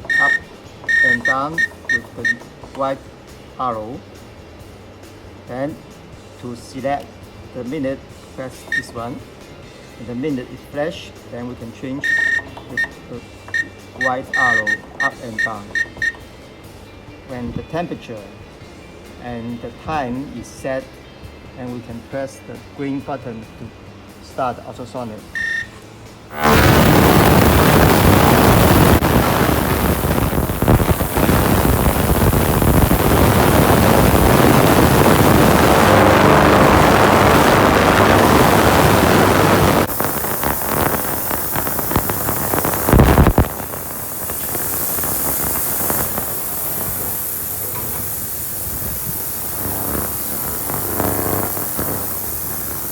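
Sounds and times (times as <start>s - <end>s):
ultrasonic cleaner hissing buzz: 0.0s - 2.3s, 26.3s - 52.9s.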